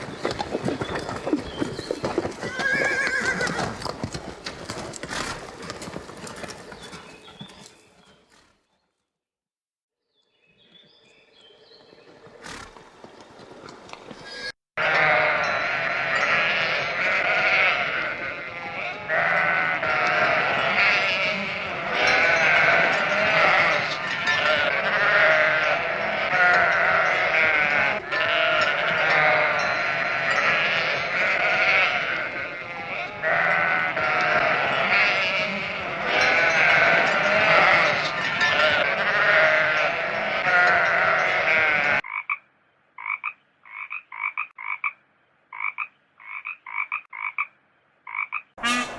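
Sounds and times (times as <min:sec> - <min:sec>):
flock of sheep bleating: 0:14.2 - 0:42.0.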